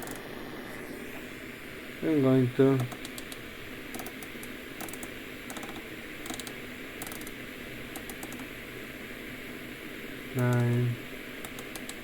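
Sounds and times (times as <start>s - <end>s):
radio static hiss: 0.0s - 12.0s
radio control clicks: 11.4s - 12.0s.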